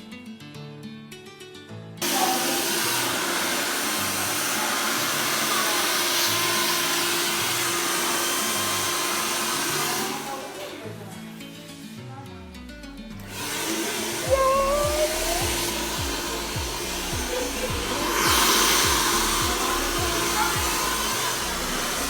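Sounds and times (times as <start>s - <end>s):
guitar music: 0.0s - 2.0s, 10.8s - 22.0s
hair dryer blowing: 2.0s - 10.8s, 13.2s - 22.0s.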